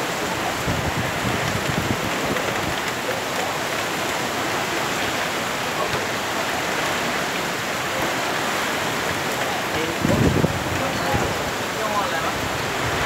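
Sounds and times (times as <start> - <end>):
heavy rain pouring: 0.0 - 13.0
wind: 0.0 - 13.0.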